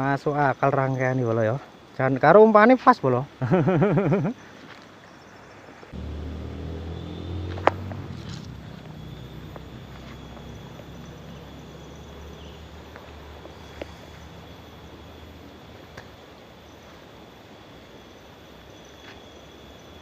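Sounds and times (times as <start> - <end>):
low engine hum: 5.9 - 16.1.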